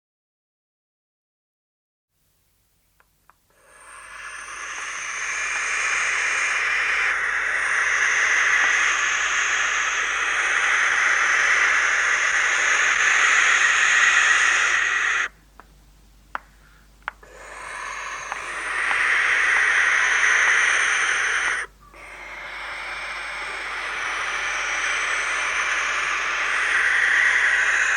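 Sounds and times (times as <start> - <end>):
owl rasping call: 3.5 - 15.4, 16.6 - 27.9
faint clicks: 4.6 - 5.1, 8.4 - 9.3, 15.6 - 17.2, 18.2 - 20.2.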